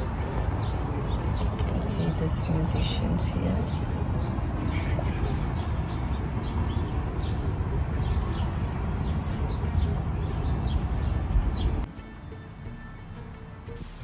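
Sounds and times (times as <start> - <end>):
low rumble: 0.0 - 11.9
high-pitched insect drone: 0.0 - 14.0.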